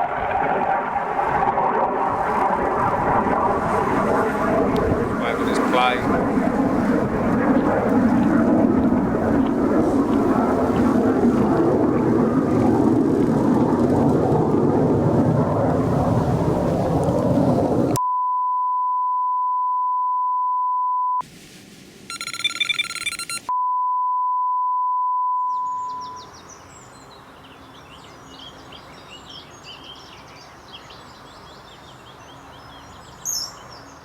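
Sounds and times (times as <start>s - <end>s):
birds chirping: 5.2s - 6.1s, 25.4s - 34.0s
electronic beeping: 22.1s - 26.2s.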